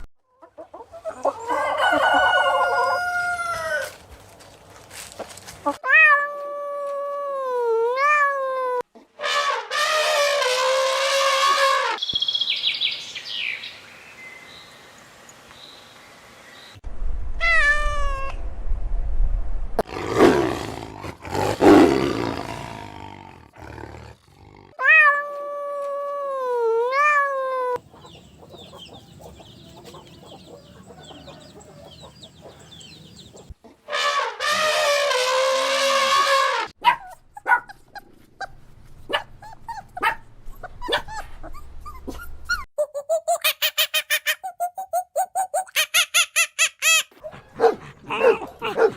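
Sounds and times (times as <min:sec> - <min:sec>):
meow-like cries: 0:05.8 - 0:08.8, 0:17.4 - 0:18.4, 0:24.8 - 0:27.8
big cat roar: 0:19.8 - 0:24.8
rapid dog barks: 0:36.8 - 0:38.5, 0:39.1 - 0:39.4, 0:40.0 - 0:41.3, 0:47.3 - 0:48.9.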